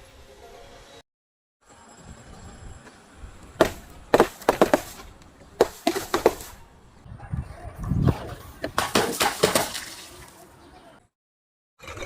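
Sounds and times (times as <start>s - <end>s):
low rumbling crunch: 3.3s - 6.7s.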